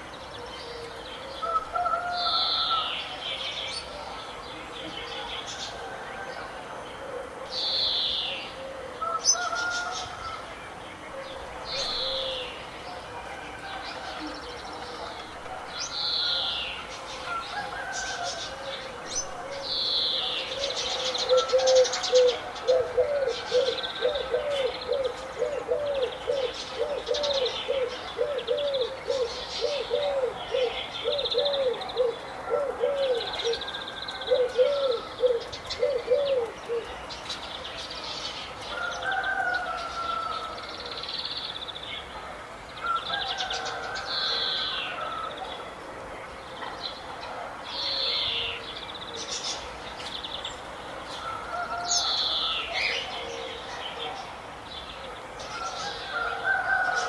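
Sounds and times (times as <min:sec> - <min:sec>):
birds chirping and singing: 0:00.0 - 0:42.2.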